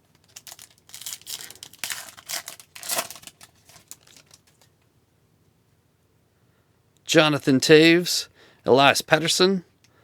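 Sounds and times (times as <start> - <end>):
wrapper crinkling and tearing: 0.0 - 4.7.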